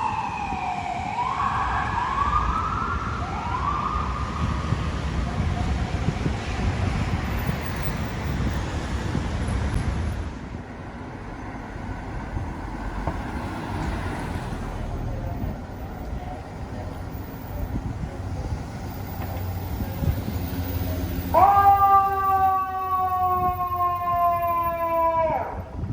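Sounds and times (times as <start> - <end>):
street traffic road noise: 0.0 - 25.9.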